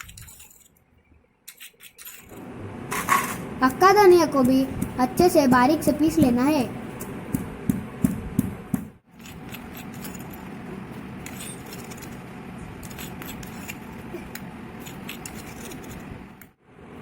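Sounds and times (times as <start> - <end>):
pestle grinding seeds: 4.3 - 10.6.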